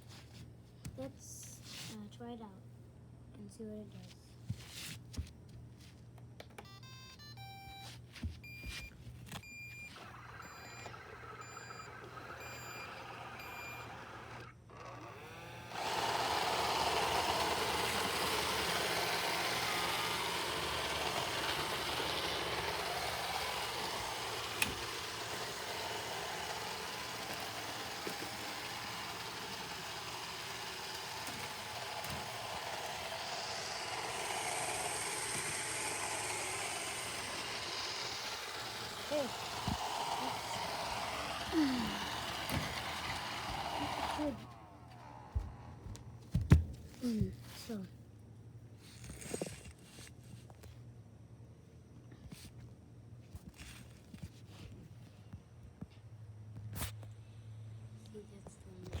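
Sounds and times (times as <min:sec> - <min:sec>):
short beeping tune: 0:06.7 - 0:07.8
evenly spaced beeps: 0:06.7 - 0:07.9, 0:09.5 - 0:14.2
vacuum motor whirring: 0:08.4 - 0:46.2.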